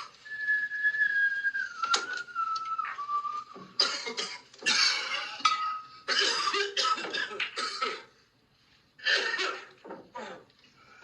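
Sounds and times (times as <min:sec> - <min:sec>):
man coughing: 0:03.8 - 0:05.4, 0:06.0 - 0:08.1.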